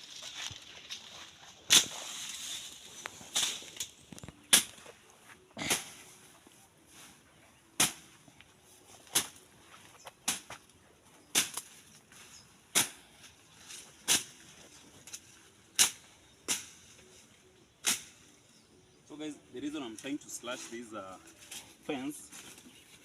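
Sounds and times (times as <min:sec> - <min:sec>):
rustle of vegetation: 0:00.0 - 0:23.0
blade chopping into hedge: 0:01.7 - 0:02.3, 0:04.5 - 0:04.8, 0:07.8 - 0:08.1, 0:11.3 - 0:11.8, 0:12.7 - 0:13.0, 0:14.0 - 0:14.4, 0:15.8 - 0:16.9, 0:17.8 - 0:18.2.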